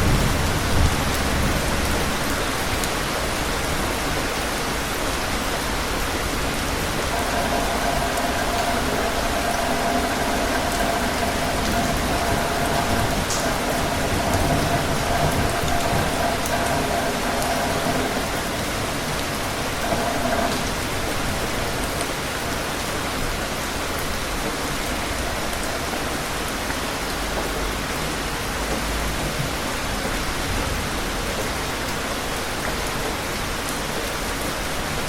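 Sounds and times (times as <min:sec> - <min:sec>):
rain falling: 0:00.0 - 0:35.0
distant thunder rumble: 0:06.3 - 0:22.8
faint steady hum: 0:06.9 - 0:22.6.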